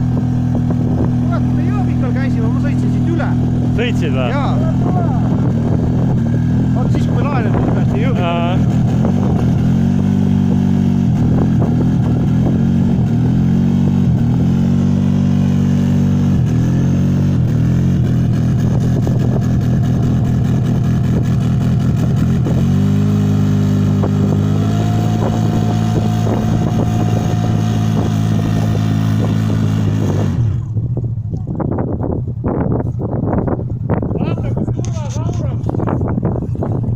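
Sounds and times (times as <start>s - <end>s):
atv engine under throttle: 0.0s - 36.9s.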